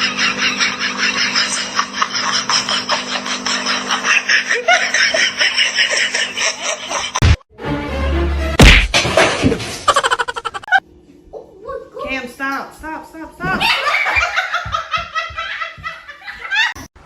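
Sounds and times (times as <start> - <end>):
person laughing hard: 0.0 - 7.3, 9.9 - 10.8, 13.5 - 16.9.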